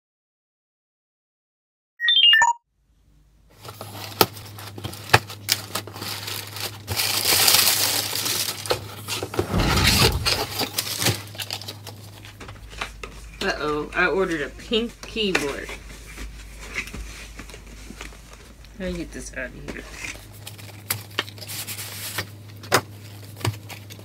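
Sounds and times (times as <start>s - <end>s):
faint steady hum: 2.8s - 24.0s
packaging crinkling and rustling: 3.6s - 13.5s, 19.6s - 24.0s.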